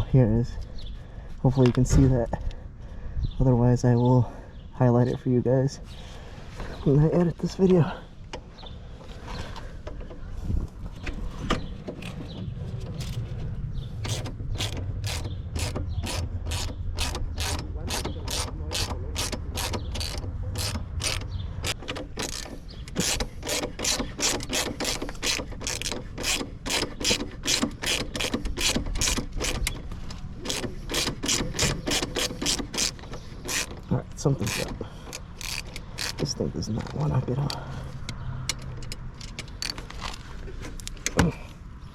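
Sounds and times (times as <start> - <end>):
low hum: 10.4 - 23.6
hand ratchet clicking: 14.1 - 29.8, 30.4 - 33.8, 34.4 - 36.3.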